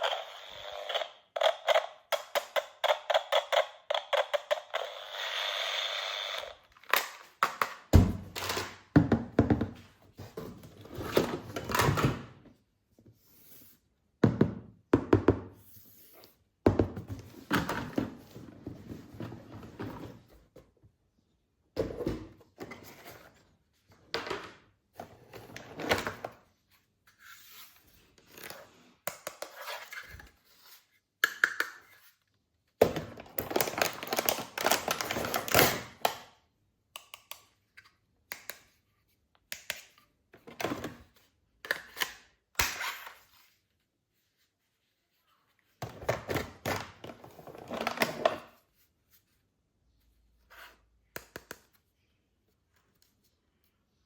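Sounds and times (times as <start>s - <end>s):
plastic toys handled: 0.0s - 13.9s, 21.8s - 36.4s.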